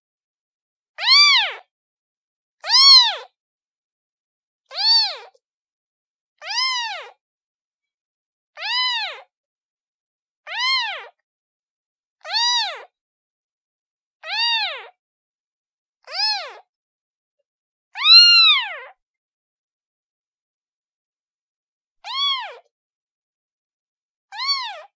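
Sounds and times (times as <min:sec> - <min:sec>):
kitten meowing: 0:01.0 - 0:01.7, 0:02.6 - 0:03.3, 0:04.7 - 0:05.4, 0:06.4 - 0:07.2, 0:08.6 - 0:09.3, 0:10.5 - 0:11.2, 0:12.2 - 0:12.9, 0:14.2 - 0:14.9, 0:16.1 - 0:16.7, 0:18.0 - 0:18.9, 0:22.0 - 0:22.7, 0:24.3 - 0:24.9.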